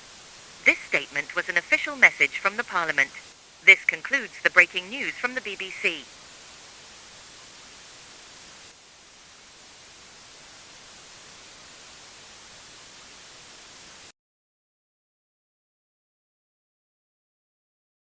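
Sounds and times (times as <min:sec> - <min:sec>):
static hiss: 0:00.0 - 0:14.1.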